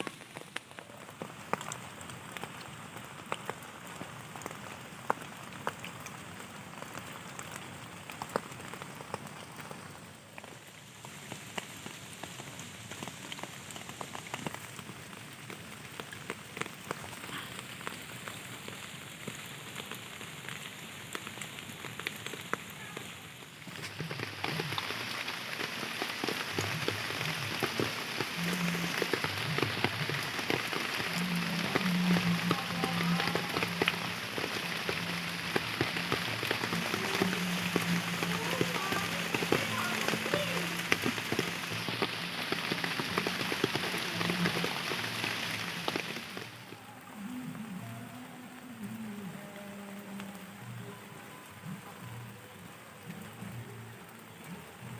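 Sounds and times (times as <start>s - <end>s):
raindrops pattering: 0.0s - 54.9s.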